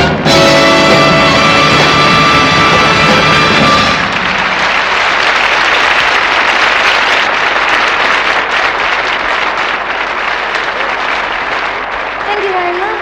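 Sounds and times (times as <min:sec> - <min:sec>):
band final chord: 0:00.0 - 0:04.5
audience applauding: 0:00.0 - 0:13.0.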